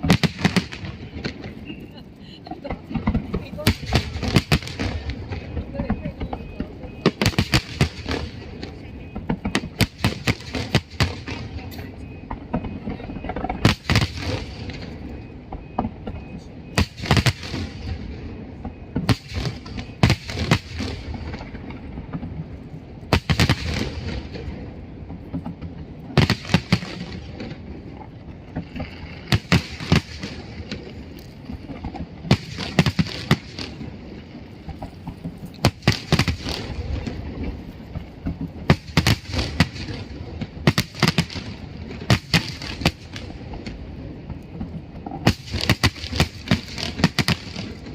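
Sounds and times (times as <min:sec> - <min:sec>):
steady background noise: 0:00.0 - 0:47.9.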